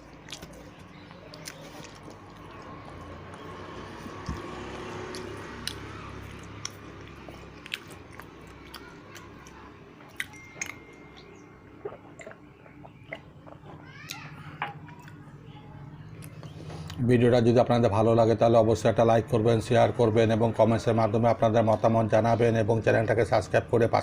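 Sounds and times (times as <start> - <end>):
close-up chewing: 0.0 - 13.8.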